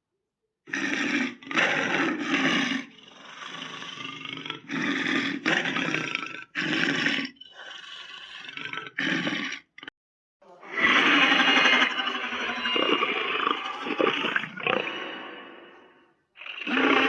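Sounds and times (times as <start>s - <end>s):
monster growling: 10.6s - 17.0s
monster roars: 10.6s - 17.0s.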